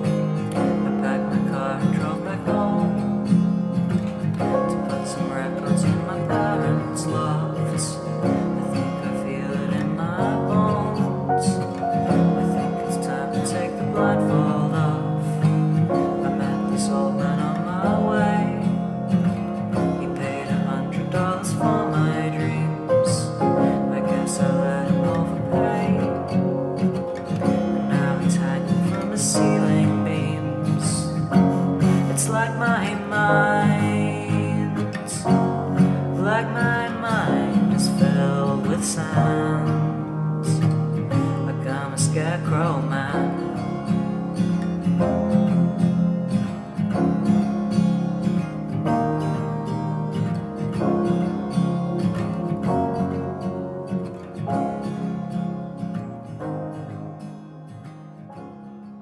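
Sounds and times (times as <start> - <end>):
sustained instrumental chords: 0.0 - 57.6
acoustic guitar song: 0.0 - 59.0.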